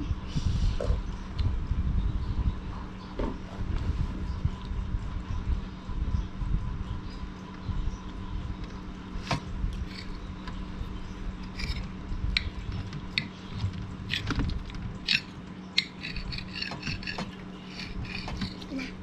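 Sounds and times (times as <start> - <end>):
low hum: 0.0 - 19.0
utensils clicking on dishes: 11.4 - 19.0.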